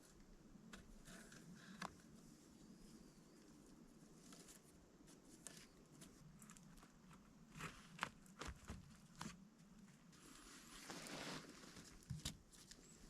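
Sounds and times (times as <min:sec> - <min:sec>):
faint crunches and clicks: 0:03.5 - 0:11.0.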